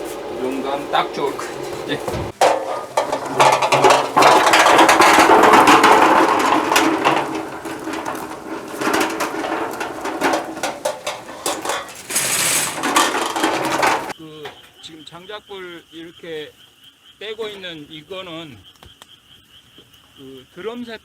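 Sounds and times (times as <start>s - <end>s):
fire rushing noise: 0.0s - 14.1s
firewood crackling and hissing: 0.0s - 14.1s.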